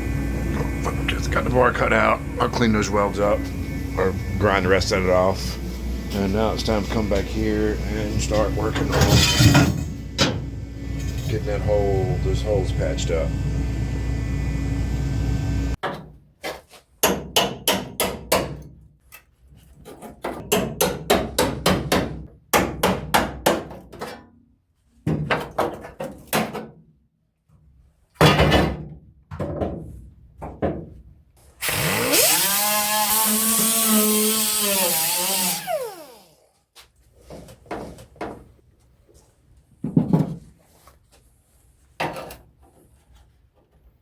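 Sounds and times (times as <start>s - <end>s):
hammering on sheet metal: 17.0s - 18.7s, 20.4s - 23.9s
angle grinder: 31.6s - 36.5s.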